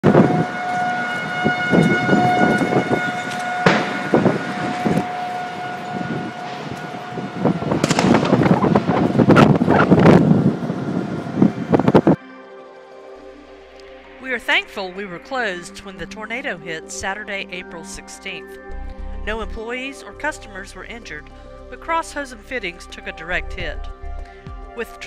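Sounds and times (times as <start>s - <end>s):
rumbling gusting storm: 0.0s - 12.2s
steady siren tone: 0.0s - 24.6s.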